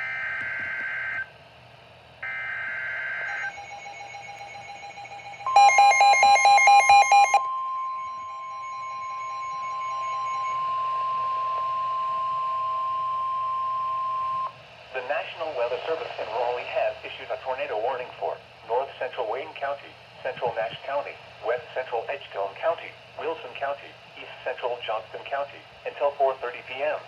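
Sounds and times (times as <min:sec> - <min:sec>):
steady warning alarm tone: 0:02.2 - 0:14.5
rapid beeps: 0:03.3 - 0:11.5
digital header data tones: 0:03.3 - 0:13.3.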